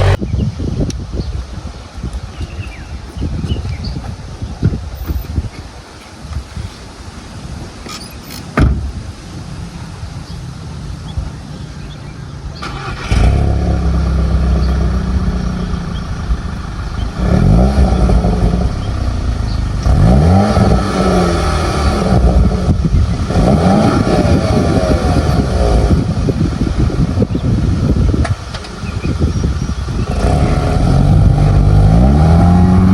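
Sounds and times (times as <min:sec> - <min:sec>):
car engine revving: 0:00.0 - 0:00.2, 0:12.6 - 0:27.7, 0:29.8 - 0:32.9.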